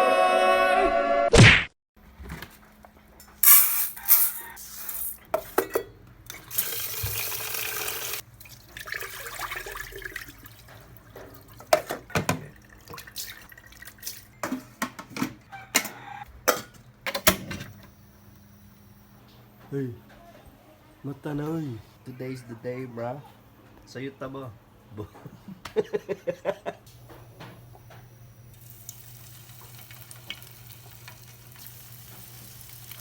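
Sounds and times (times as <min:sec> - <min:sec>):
water running from a tap: 0:06.4 - 0:11.8, 0:12.4 - 0:14.3, 0:28.5 - 0:33.0.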